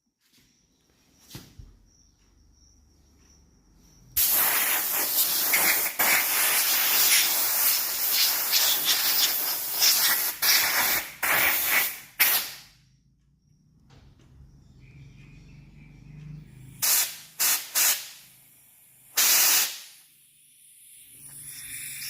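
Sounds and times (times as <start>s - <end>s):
compressed air blow gun hissing: 4.2s - 12.7s, 16.8s - 18.3s, 18.9s - 22.0s.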